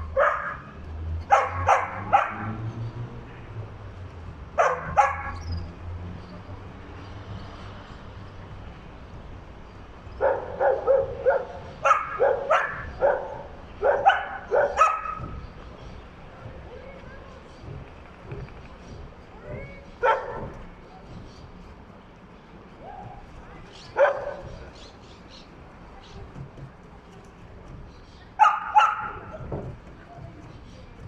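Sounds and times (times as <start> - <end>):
dog barking: 0.0 - 2.6, 4.6 - 5.4, 10.2 - 15.4, 20.0 - 20.5, 24.0 - 24.6, 28.4 - 29.4.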